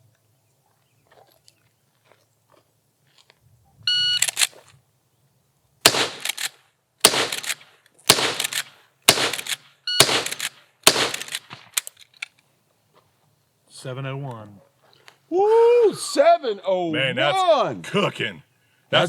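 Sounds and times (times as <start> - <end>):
rifle shots: 5.8 - 11.9
rifle lever being worked: 6.2 - 6.6, 8.3 - 12.4.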